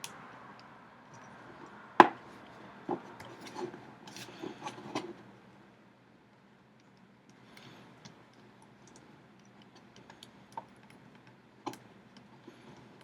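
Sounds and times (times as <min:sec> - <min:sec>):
light clicks and scrapes: 0:01.1 - 0:05.3, 0:06.8 - 0:13.0.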